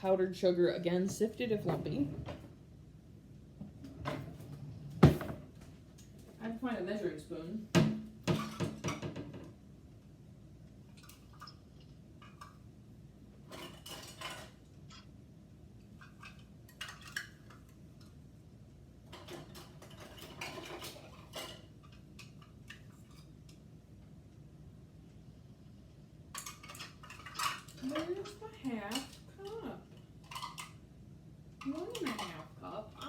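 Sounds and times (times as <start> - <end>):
kitchen utensils clattering: 7.8 - 9.5, 13.4 - 15.1, 19.1 - 23.3, 26.4 - 30.8, 31.6 - 33.0.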